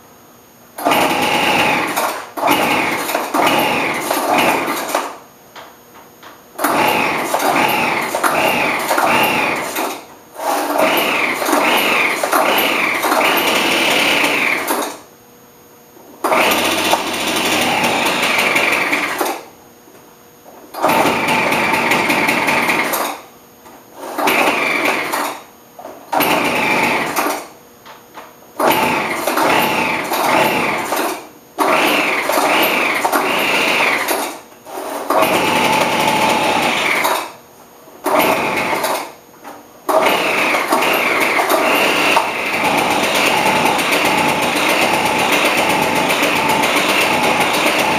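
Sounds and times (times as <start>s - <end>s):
leaf blower engine running rough: 0.8s - 5.0s, 6.6s - 14.9s, 16.2s - 19.4s, 20.8s - 23.1s, 24.2s - 25.3s, 26.2s - 27.3s, 28.6s - 34.3s, 35.1s - 37.3s, 38.1s - 39.0s, 39.9s - 47.9s.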